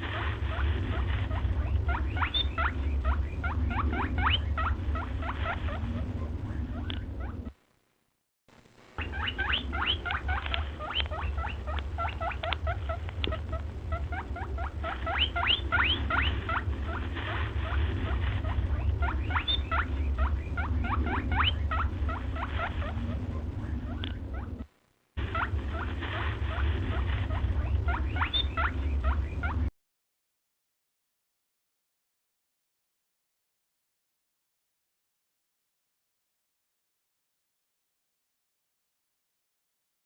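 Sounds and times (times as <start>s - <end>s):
small animal squeaking: 0.0s - 7.5s, 9.0s - 29.7s
steady low hum: 0.0s - 29.7s.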